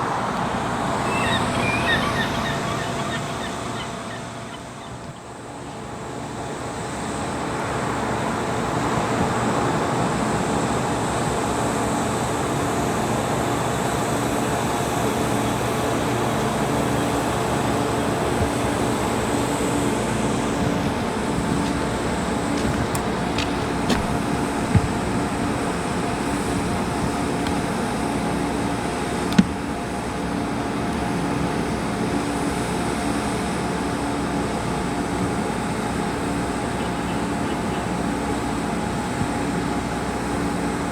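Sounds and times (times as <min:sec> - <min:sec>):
vehicle engine running: 0:00.0 - 0:35.3
short knocks: 0:17.6 - 0:27.9, 0:29.2 - 0:29.8.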